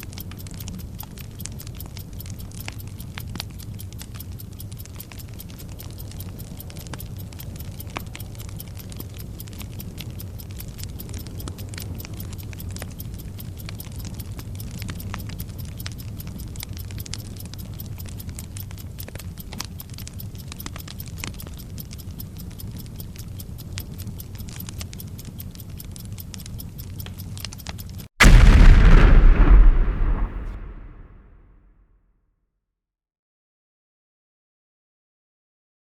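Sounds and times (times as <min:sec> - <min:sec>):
steady low hum: 0:28.2 - 0:31.4.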